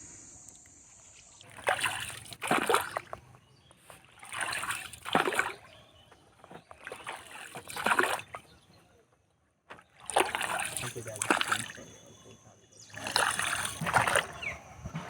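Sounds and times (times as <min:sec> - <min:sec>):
faint insect buzz: 0:00.0 - 0:01.4
oars splashing in water: 0:00.6 - 0:08.9, 0:09.7 - 0:15.0.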